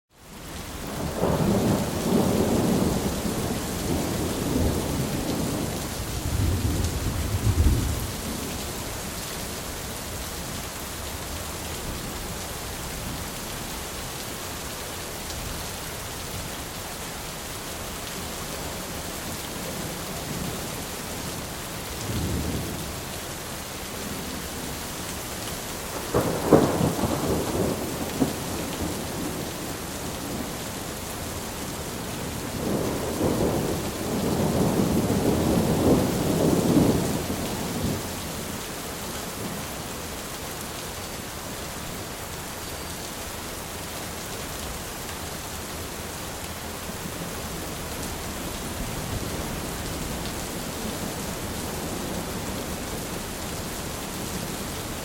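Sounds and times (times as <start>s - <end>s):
steady rain: 0.1s - 55.0s
thunder rumbling: 0.9s - 8.8s, 25.9s - 30.7s, 31.9s - 38.3s
sharp thunderclap: 26.1s - 29.4s.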